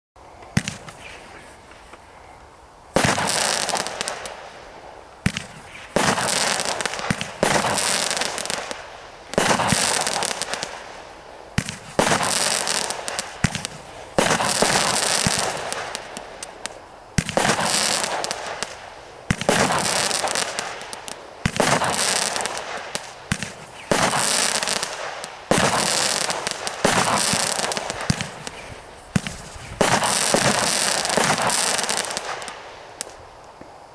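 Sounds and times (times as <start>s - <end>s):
crackling firework stars: 0.2s - 33.9s
firework cake shots: 5.2s - 8.8s, 11.6s - 33.2s.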